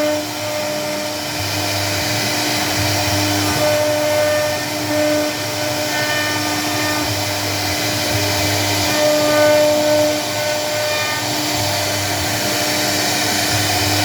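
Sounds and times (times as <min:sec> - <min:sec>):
cnc router spindle whine: 0:00.0 - 0:14.0.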